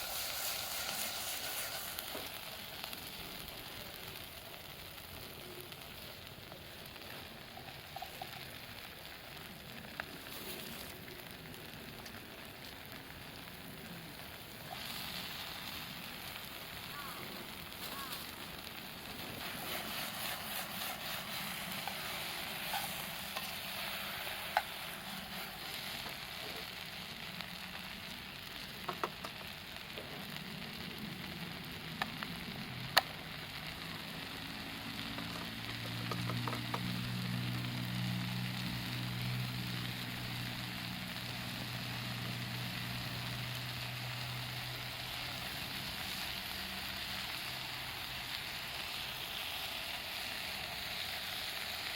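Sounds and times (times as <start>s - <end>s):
food sizzling in oil: 0.0s - 51.9s.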